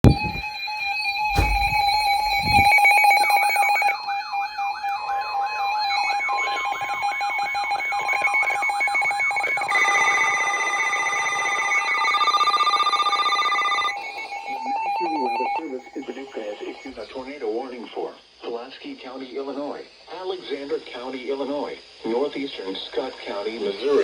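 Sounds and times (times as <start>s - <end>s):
warbling alert tone: 0.0s - 0.4s, 1.3s - 3.3s
low thuds: 0.0s - 0.5s, 1.3s - 2.9s
steady high alert tone: 1.3s - 3.8s.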